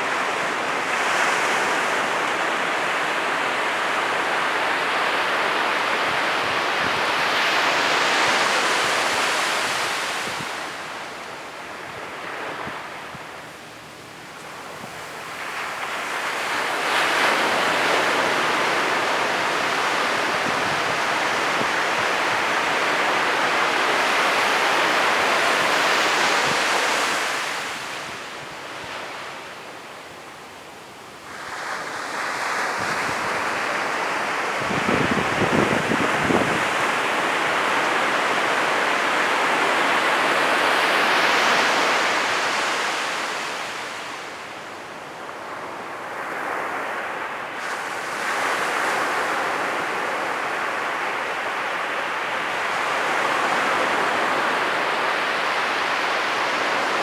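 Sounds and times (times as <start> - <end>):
ocean surf breaking: 0.0 - 29.5.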